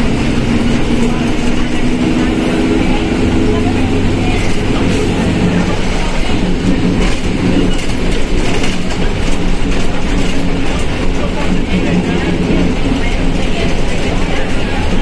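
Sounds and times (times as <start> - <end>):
transmission growl: 0.0 - 6.9
bus engine and drivetrain noise: 0.0 - 15.0
body clicks and rattles: 6.4 - 15.0.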